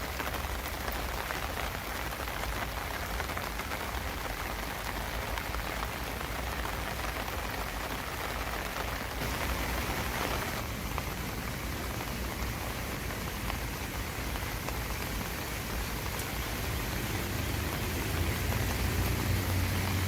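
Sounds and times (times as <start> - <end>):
individual raindrop ticks: 0.0 - 20.0
steady rain on foliage: 0.0 - 20.0.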